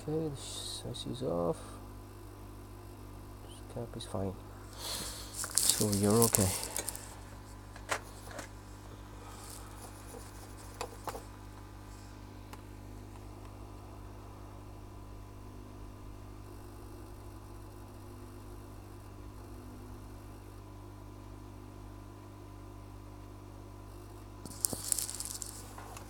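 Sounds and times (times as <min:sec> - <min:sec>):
low electrical hum: 0:00.0 - 0:26.0.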